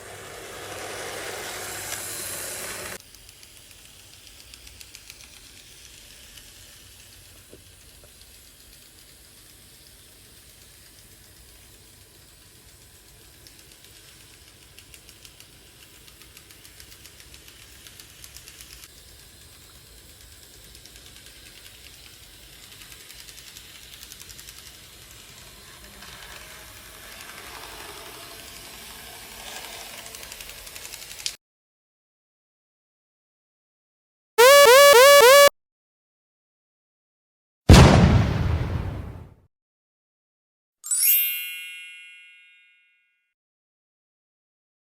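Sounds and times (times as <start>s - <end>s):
model train flapping rattle: 0.2s - 31.4s.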